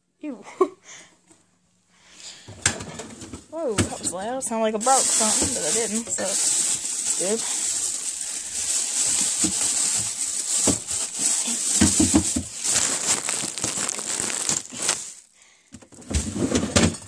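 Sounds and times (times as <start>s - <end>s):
plastic packaging crinkling: 3.9s - 15.4s.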